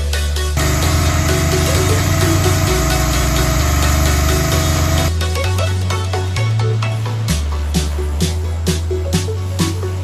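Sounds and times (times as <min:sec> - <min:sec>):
electronic music with heavy bass: 0:00.6 - 0:05.2.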